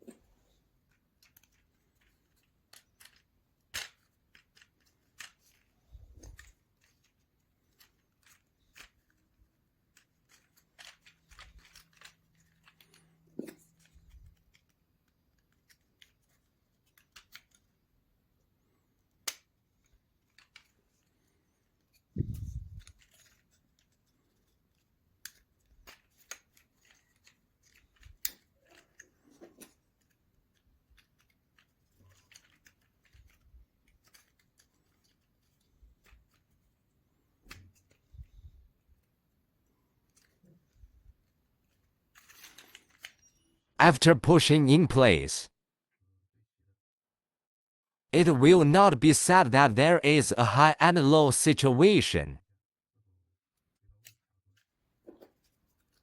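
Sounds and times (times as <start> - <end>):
wooden model parts clicking: 0.8 - 17.8, 19.0 - 22.1, 22.8 - 36.6.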